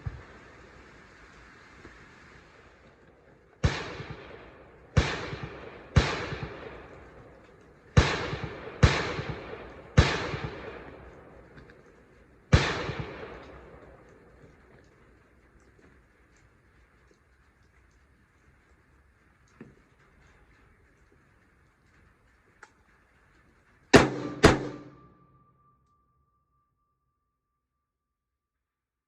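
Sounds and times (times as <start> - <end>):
rifle shots with echo: 3.6 - 11.6, 12.5 - 14.1, 23.9 - 25.4.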